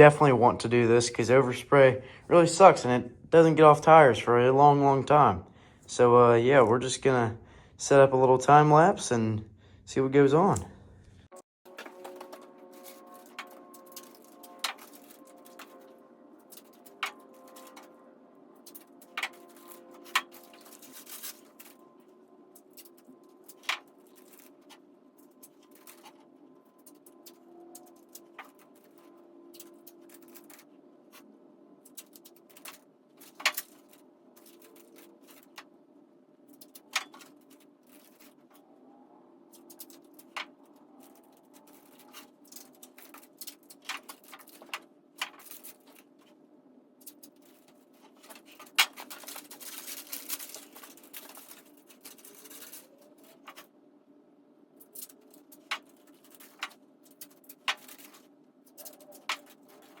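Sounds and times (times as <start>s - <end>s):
faint steady hum: 0.0s - 60.0s
paper rustling: 11.7s - 17.9s, 18.6s - 21.8s, 22.6s - 35.7s, 36.5s - 38.6s, 39.5s - 46.3s, 47.0s - 53.7s, 54.8s - 60.0s
tape clicks and scratches: 11.7s - 35.7s, 39.5s - 46.3s, 47.0s - 53.7s, 54.8s - 60.0s.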